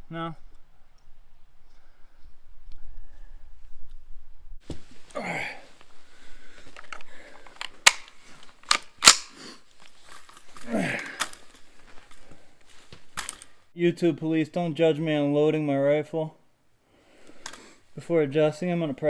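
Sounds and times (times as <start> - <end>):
handling rustle: 4.6 - 13.7
rifle action metallic clicks: 6.8 - 9.4.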